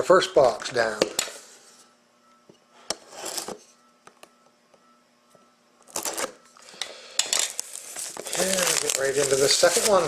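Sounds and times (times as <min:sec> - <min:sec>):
faint steady hum: 0:00.0 - 0:10.0
cardboard and wrapper rustling: 0:07.6 - 0:10.0.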